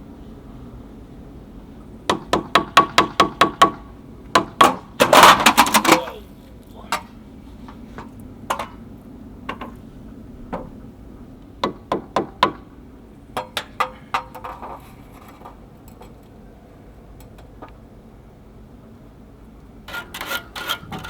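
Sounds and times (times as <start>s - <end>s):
hard objects knocking together: 4.6s - 6.1s.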